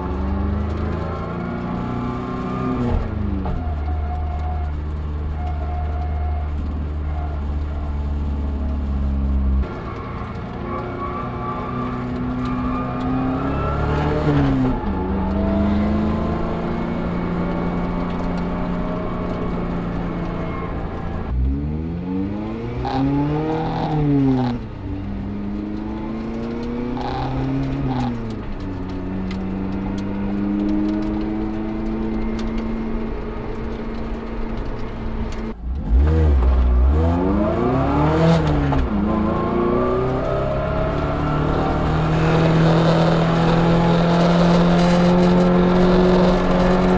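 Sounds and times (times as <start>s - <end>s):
car engine revving: 0.0s - 46.9s.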